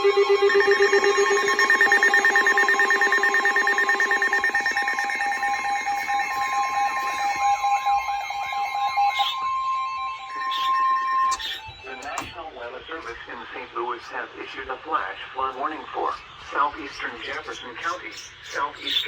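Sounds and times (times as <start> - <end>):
rapid pulsed beeping: 0.0 - 12.4
warbling alarm: 0.0 - 12.5
long steady warning tone: 0.0 - 13.4.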